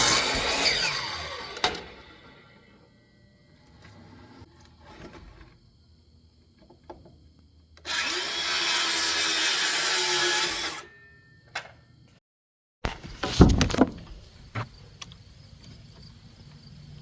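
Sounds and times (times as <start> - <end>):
power saw cutting wood: 0.0 - 3.0, 7.8 - 10.9.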